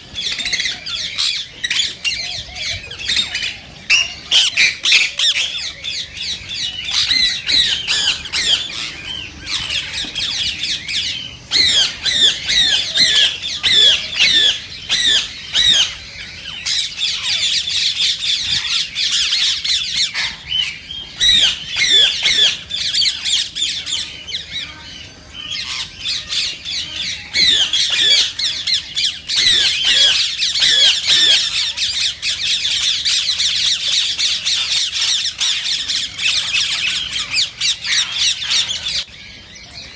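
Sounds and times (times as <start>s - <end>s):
parakeets squawking: 0.0s - 39.9s.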